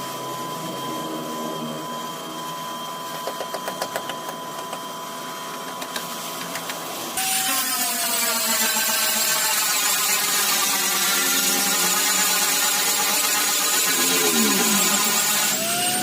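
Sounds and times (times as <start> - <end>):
power tool pitch sliding down: 0.0 - 3.3, 7.2 - 16.0
machine whine: 0.0 - 16.0.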